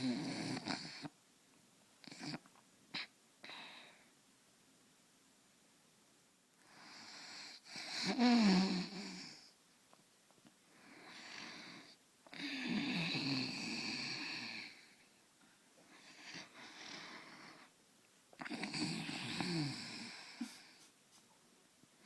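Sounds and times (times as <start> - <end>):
person snoring: 0.0 - 1.1, 18.4 - 20.7
soft breath: 3.4 - 4.2, 14.5 - 17.8, 19.0 - 21.3.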